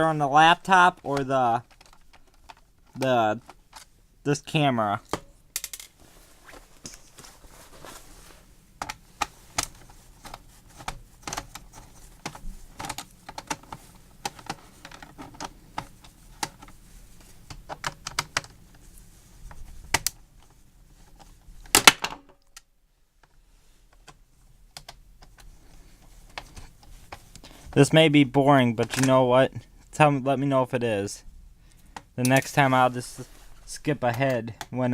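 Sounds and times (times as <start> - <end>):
keyboard plastic clicks and clatter: 1.2 - 3.9, 8.8 - 16.7, 17.5 - 18.6.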